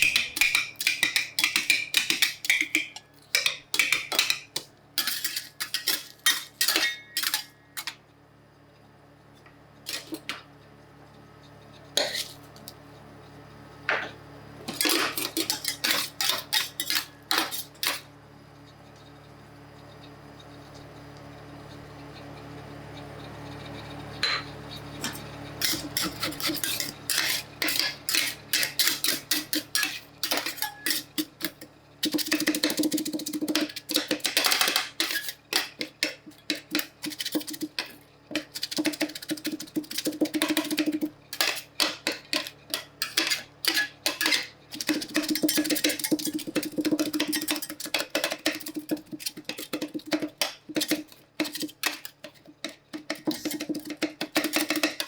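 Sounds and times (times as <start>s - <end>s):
metal spatulas clattering on steel: 0.0s - 8.0s, 14.7s - 18.0s, 25.0s - 55.0s.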